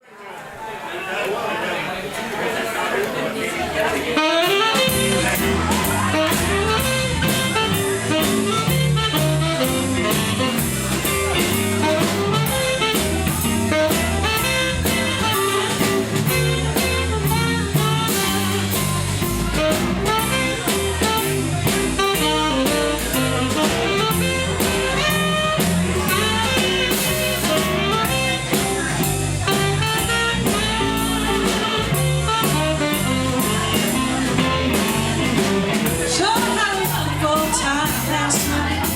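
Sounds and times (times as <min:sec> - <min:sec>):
blues band playing: 0:03.2 - 0:38.9
bass guitar: 0:04.2 - 0:38.9
drum kit beat: 0:04.2 - 0:38.9
melodic lead instrument: 0:04.6 - 0:38.0.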